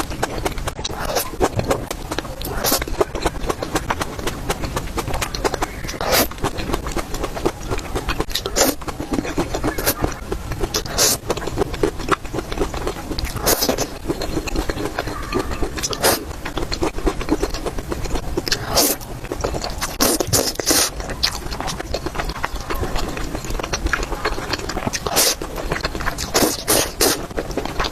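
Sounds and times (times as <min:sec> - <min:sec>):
wet chewing and mouth clicks: 0:00.0 - 0:27.9.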